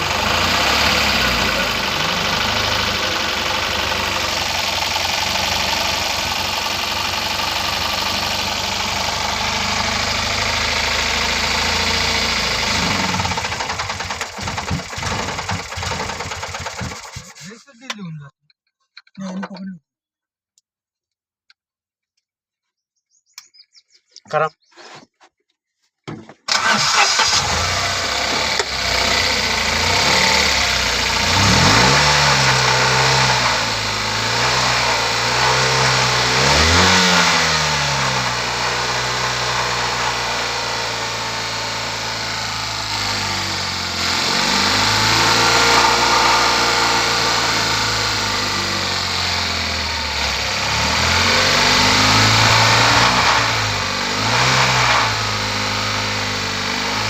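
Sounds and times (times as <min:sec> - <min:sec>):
car engine starting and revving: 0:00.0 - 0:17.4, 0:26.5 - 0:57.0.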